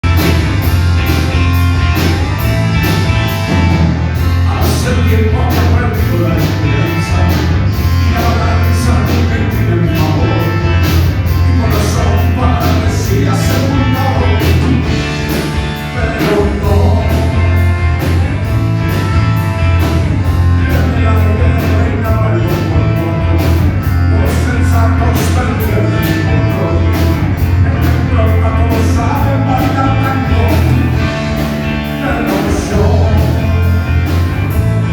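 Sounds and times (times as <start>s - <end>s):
bass line: 0.0s - 34.9s
rock band playing live: 0.0s - 34.9s.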